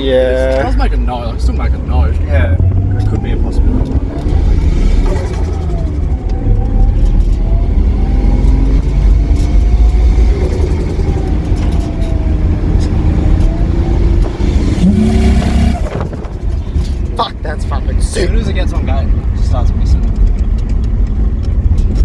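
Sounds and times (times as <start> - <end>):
car engine revving hard: 0.8 - 16.6.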